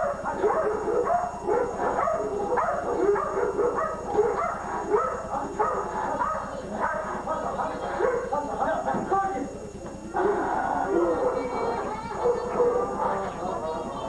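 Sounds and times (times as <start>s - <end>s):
dog barking and yipping: 0.0s - 7.2s.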